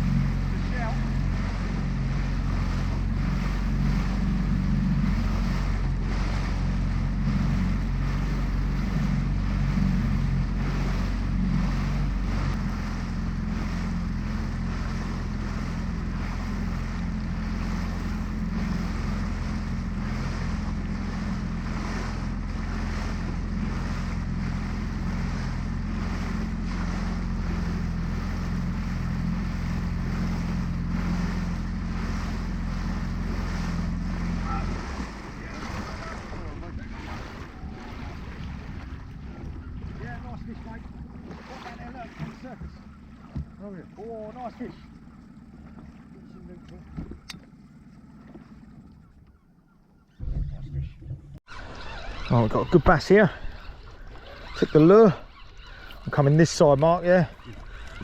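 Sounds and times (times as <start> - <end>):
outboard motor running: 0.0 - 58.0
wind noise on microphone: 36.3 - 40.0.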